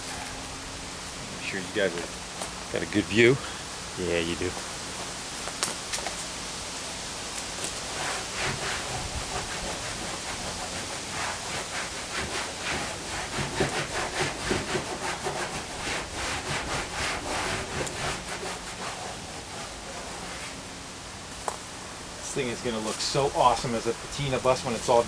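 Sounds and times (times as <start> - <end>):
hand sanding sheet metal: 7.4 - 20.7, 22.2 - 25.0.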